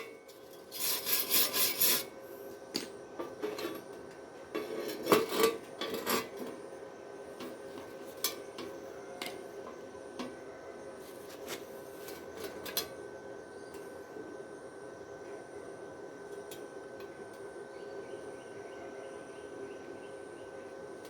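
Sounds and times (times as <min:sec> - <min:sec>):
metal scraping and clinking: 0:00.0 - 0:02.1, 0:04.5 - 0:06.4
faint steady hum: 0:00.0 - 0:21.0.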